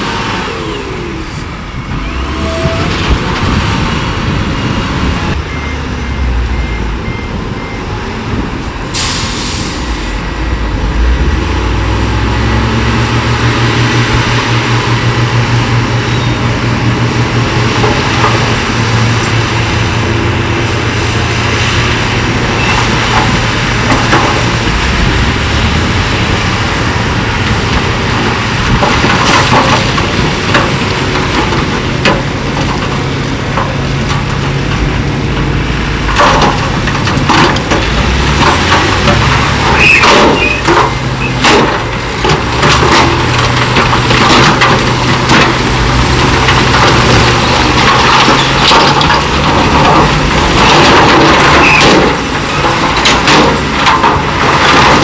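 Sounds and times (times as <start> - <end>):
heavy diesel engines under load: 0.0 - 55.0
air hiss burst: 8.9 - 10.2.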